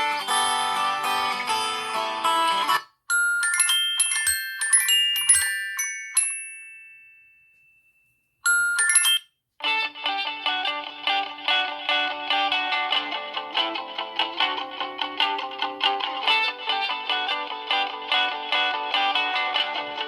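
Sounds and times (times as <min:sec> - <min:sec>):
busy ringtone melody: 0:00.0 - 0:07.6, 0:08.4 - 0:09.4
bell-like chime ringtone: 0:00.3 - 0:09.4.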